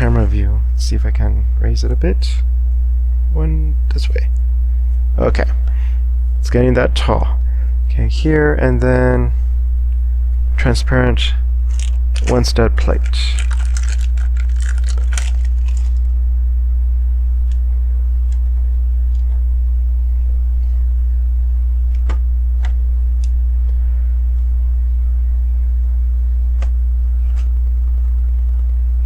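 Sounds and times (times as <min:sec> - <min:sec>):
low electrical hum: 0:00.0 - 0:29.0
plastic pieces rustling: 0:11.7 - 0:16.1.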